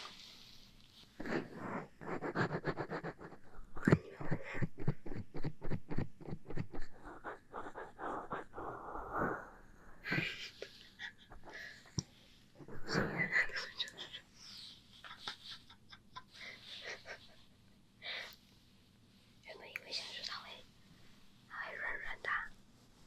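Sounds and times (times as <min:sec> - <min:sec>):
fur brushing against microphone: 0:00.0 - 0:03.0.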